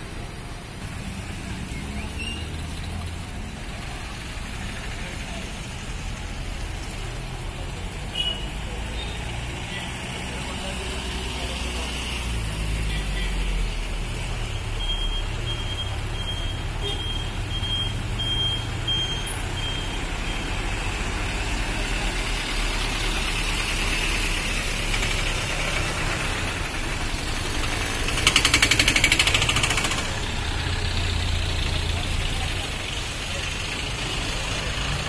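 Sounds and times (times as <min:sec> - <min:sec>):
truck engine rumbling: 0:00.0 - 0:35.0
reversing alarm beeping: 0:14.6 - 0:20.6.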